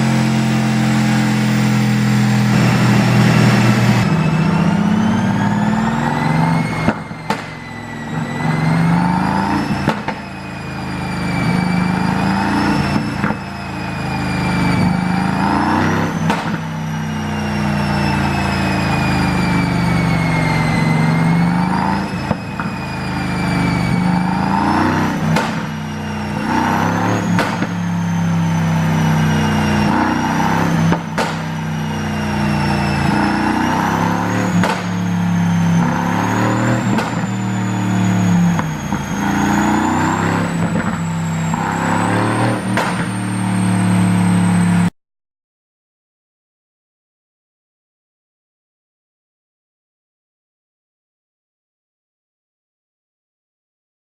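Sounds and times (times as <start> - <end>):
car engine revving: 0.0 - 44.9
high whine: 0.0 - 44.9
exhaust cracks: 22.1 - 28.1, 29.8 - 31.7, 34.2 - 37.8, 42.5 - 43.4.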